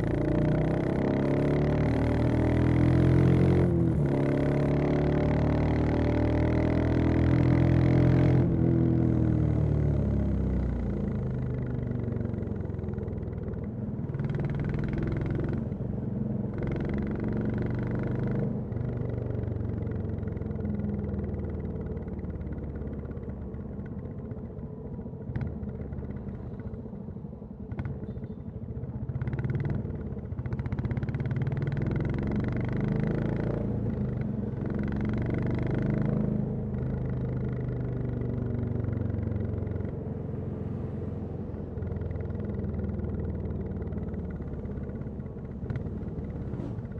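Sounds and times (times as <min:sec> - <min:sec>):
motorcycle engine revving: 0:00.0 - 0:09.4, 0:29.0 - 0:46.9.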